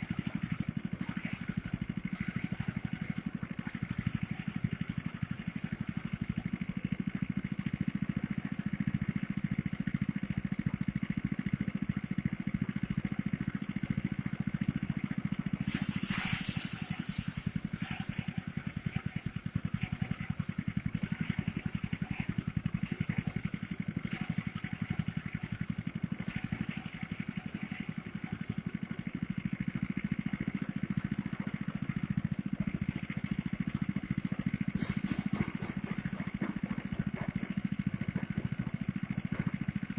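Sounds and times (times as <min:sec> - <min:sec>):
small engine droning: 0:00.0 - 0:39.9
short hiss: 0:15.6 - 0:17.6, 0:34.8 - 0:35.4.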